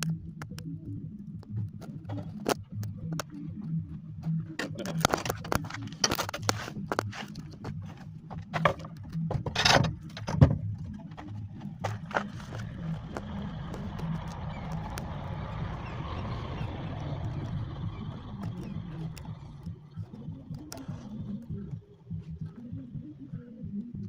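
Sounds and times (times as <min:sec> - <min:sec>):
steady low hum: 0:00.0 - 0:24.0
metal scaffold parts clanking: 0:08.5 - 0:10.7.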